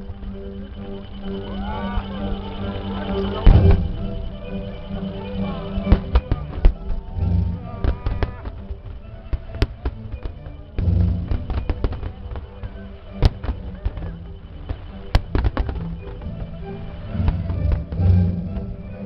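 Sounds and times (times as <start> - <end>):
music: 0.0 - 19.0
fireworks bangs and crackles: 3.4 - 4.4, 5.8 - 19.0.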